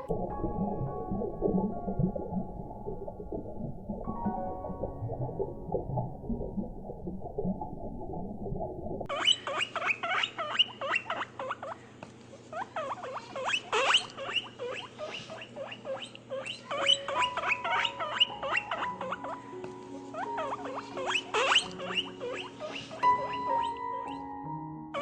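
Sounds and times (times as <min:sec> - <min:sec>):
small animals squeaking: 0:09.1 - 0:11.8, 0:12.4 - 0:24.3.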